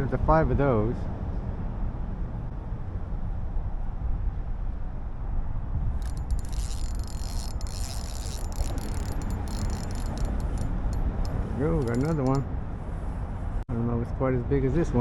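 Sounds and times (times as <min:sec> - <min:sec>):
fishing reel clicking: 0:06.0 - 0:12.4.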